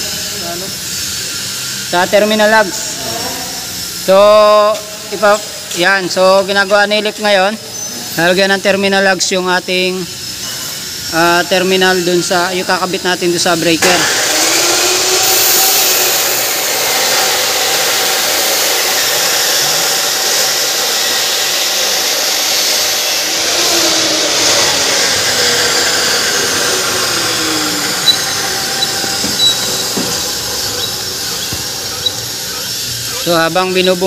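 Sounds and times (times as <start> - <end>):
machine whirring hiss: 0.0 - 34.0.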